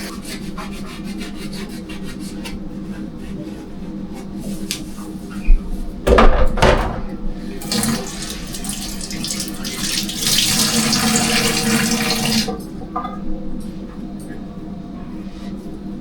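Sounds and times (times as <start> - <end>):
knocks and clatters: 6.1 - 7.2
tap water running into sink: 7.6 - 13.1.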